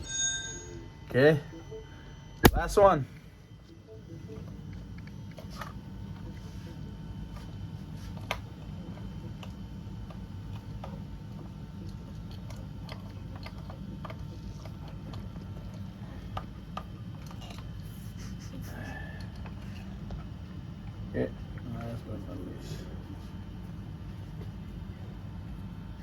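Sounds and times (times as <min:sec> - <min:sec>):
steady low hum: 0:00.0 - 0:26.0
sharp click: 0:02.4 - 0:02.8.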